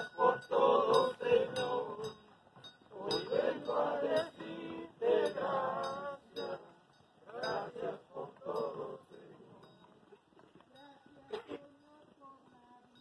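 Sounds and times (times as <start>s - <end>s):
group of people singing a religious song: 0.0s - 9.8s.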